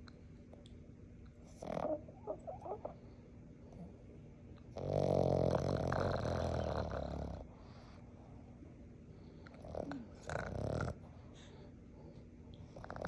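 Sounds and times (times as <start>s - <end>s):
puppy snoring loudly: 1.5s - 2.9s, 4.7s - 8.0s, 9.6s - 11.2s, 12.7s - 13.0s.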